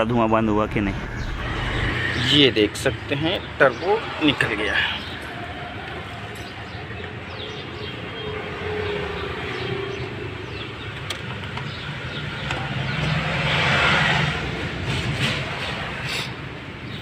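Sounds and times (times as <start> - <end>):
vehicle engine running: 0.0 - 2.3
faint whine: 0.0 - 3.1.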